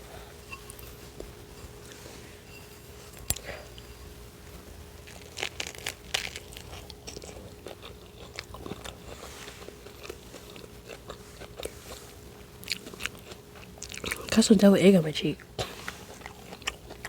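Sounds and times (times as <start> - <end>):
crisp biting crunches: 5.0 - 14.4
wet chewing clicks: 5.0 - 14.5, 15.4 - 17.0.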